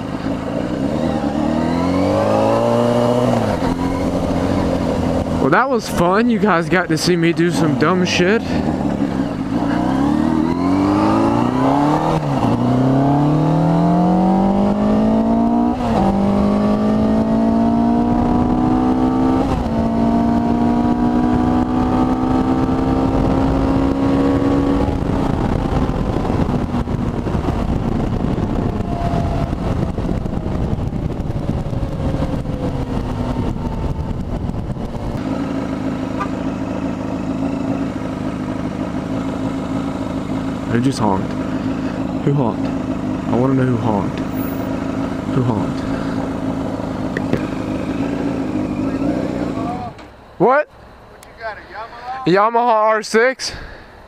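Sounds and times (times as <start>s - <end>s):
motorcycle engine accelerating: 0.0s - 51.0s
wind noise on microphone: 14.2s - 35.2s.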